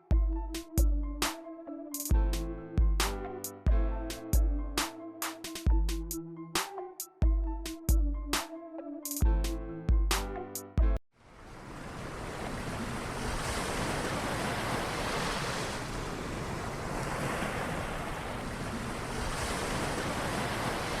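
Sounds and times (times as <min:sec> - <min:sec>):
background music bass hit: 0:02.1 - 0:06.2
waves washing on shore: 0:11.2 - 0:21.0.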